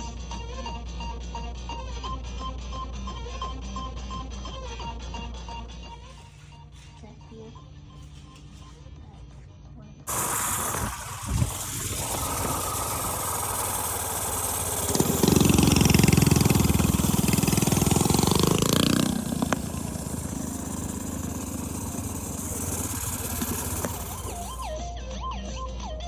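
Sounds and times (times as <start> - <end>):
small engine running and revving: 10.1 - 24.8.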